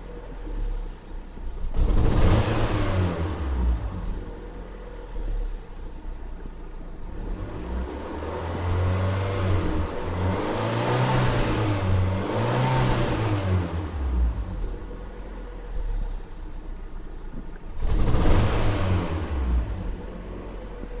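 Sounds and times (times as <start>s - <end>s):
car engine revving and misfiring: 0.0s - 16.5s, 17.6s - 21.0s.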